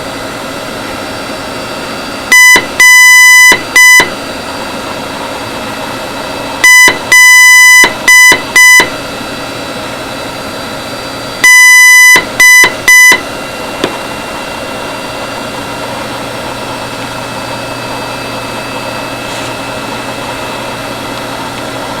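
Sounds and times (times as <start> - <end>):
buzzy morse code beeps: 2.3 - 4.2, 6.6 - 9.0, 11.4 - 13.2.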